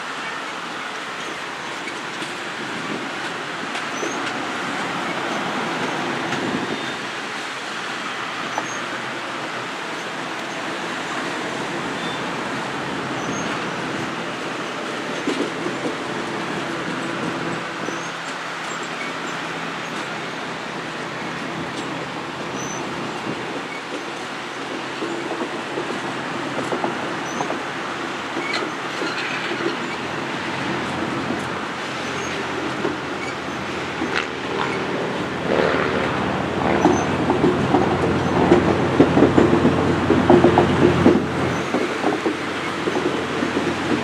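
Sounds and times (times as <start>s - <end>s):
train cars rolling on rails: 0.0s - 44.0s
wheel squeal: 3.7s - 9.0s, 10.0s - 14.2s, 16.6s - 23.0s, 27.2s - 27.6s, 28.3s - 44.0s.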